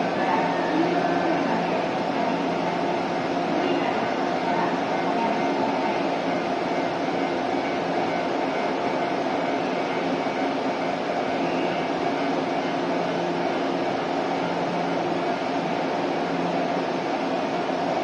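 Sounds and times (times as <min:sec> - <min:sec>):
electric train machinery hum: 0:00.0 - 0:18.0.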